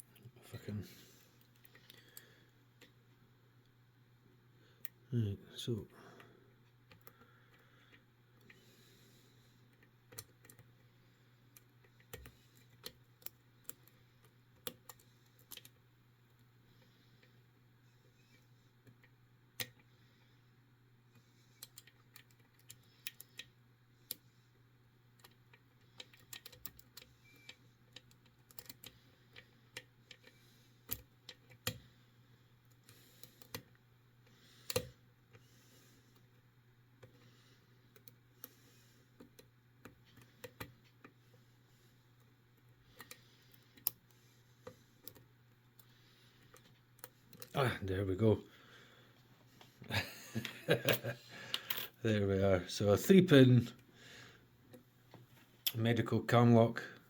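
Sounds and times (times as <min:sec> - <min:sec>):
lock picks clicking: 0:25.2 - 0:31.8.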